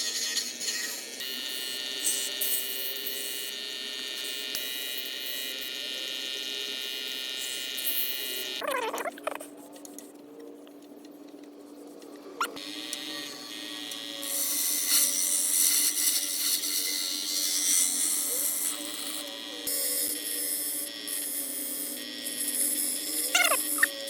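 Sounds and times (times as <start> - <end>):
wood lathe motor whining: 12.4 - 24.0.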